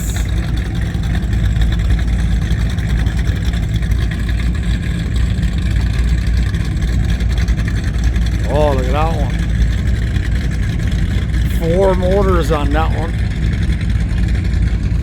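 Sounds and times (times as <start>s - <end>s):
powerboat engines rumbling: 0.0s - 15.0s.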